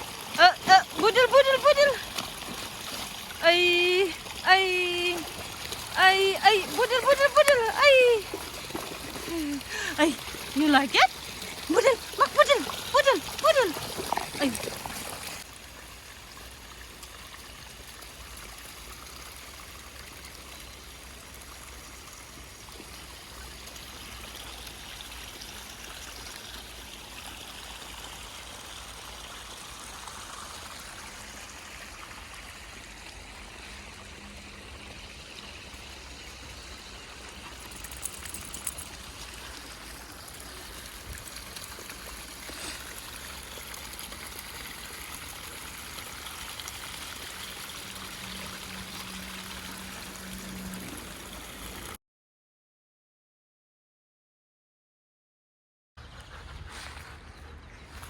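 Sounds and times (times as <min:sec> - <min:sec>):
stream water rushing: 0:00.0 - 0:18.3, 0:29.6 - 0:52.0.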